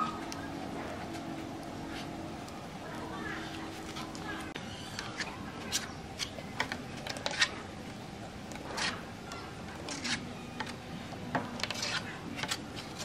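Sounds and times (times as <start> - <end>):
steady low hiss: 0.0 - 13.0.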